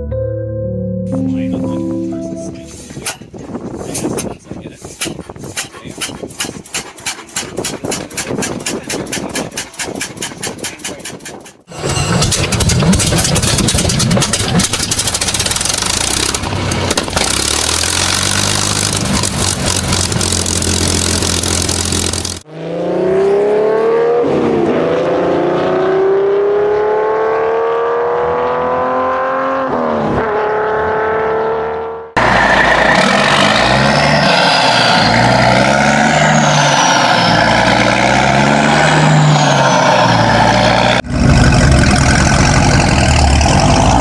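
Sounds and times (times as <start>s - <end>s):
rough clattery engine running: 3.0s - 22.4s, 32.2s - 44.0s
engine revving through gears: 11.6s - 44.0s.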